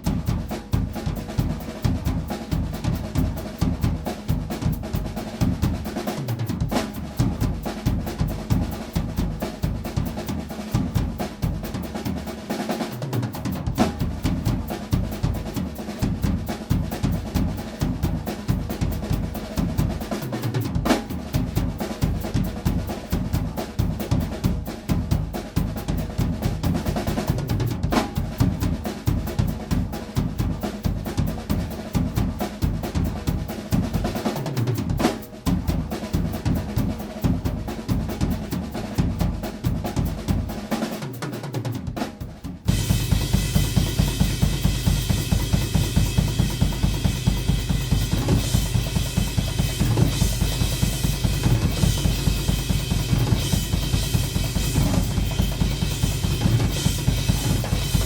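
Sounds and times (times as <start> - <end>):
bass drum patterns: 0.0 - 40.8, 41.7 - 58.0
snare drum rolls and rimshots: 0.0 - 58.0
cymbal crashes: 42.7 - 58.0.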